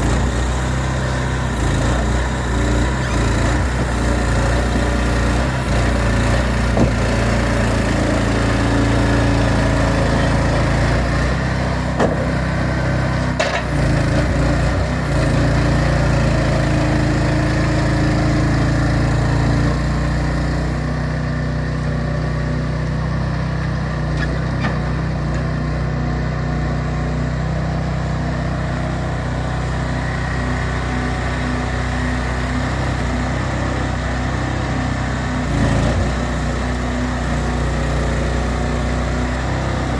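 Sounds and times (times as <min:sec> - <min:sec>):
engine running: 0:00.0 - 0:39.9
short knocks: 0:12.0 - 0:12.3.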